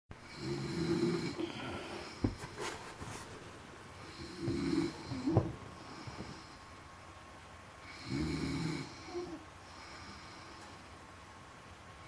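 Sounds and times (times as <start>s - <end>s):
quiet breathing: 0.2s - 3.3s, 4.0s - 6.9s, 7.8s - 11.1s
woman snoring: 0.3s - 2.2s, 4.1s - 6.4s, 7.9s - 10.5s.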